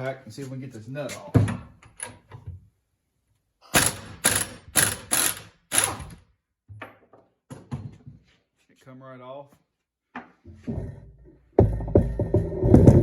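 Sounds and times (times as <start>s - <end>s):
impact wrench hammering: 3.8s - 6.2s.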